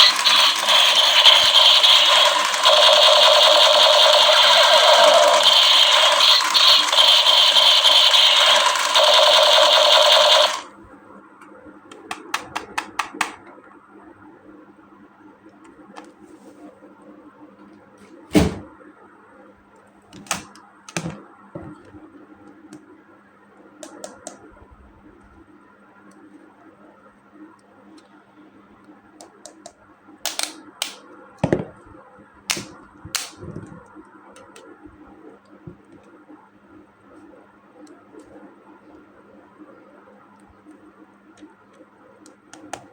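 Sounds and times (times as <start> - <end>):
loud steady hissing: 0.0 - 10.7.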